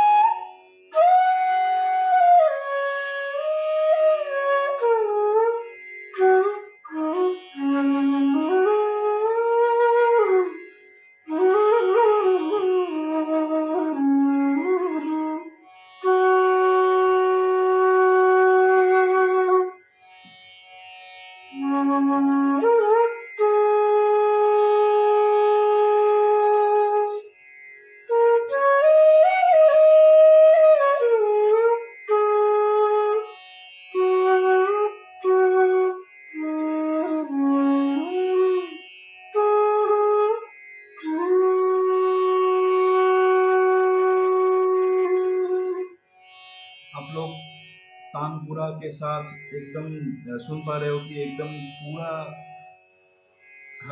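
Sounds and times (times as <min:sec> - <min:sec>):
bamboo flute melody: 0:00.0 - 0:52.8
tanpura drone: 0:00.0 - 0:53.9.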